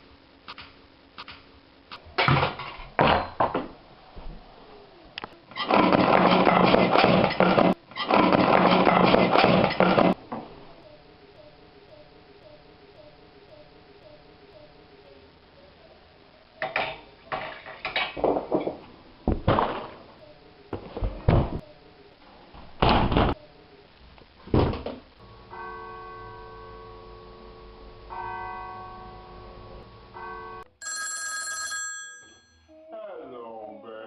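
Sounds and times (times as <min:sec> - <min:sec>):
steady electronic tones: 0:10.1 - 0:17.2.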